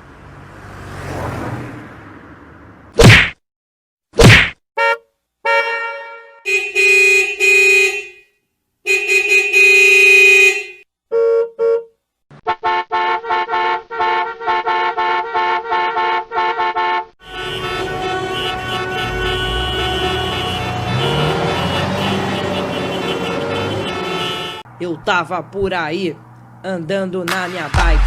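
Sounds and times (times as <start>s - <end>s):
vehicle engine and traffic: 0.0s - 3.2s, 5.5s - 28.0s
horn honking: 4.8s - 24.8s.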